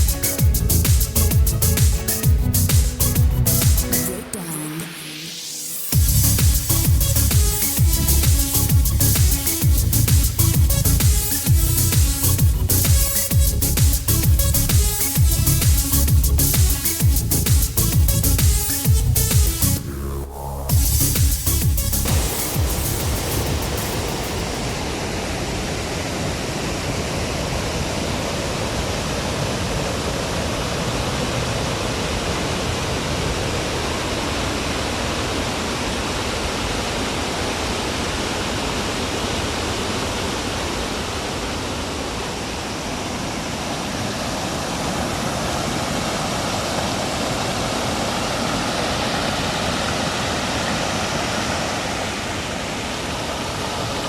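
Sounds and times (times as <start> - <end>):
waterfall rushing: 20.7 - 54.0.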